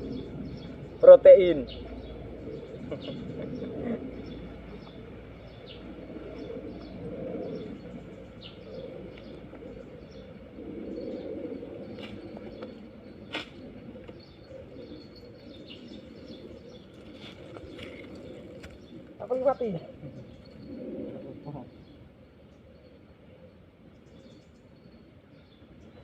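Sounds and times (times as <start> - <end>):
steady low rumble: 0.0 - 25.0
small birds chirping: 0.0 - 26.0.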